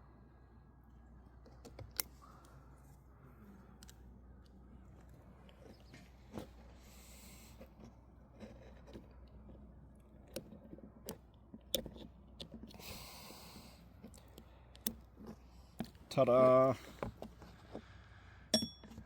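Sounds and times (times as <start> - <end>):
screwdriver clicking on metal ring: 18.5 - 19.0.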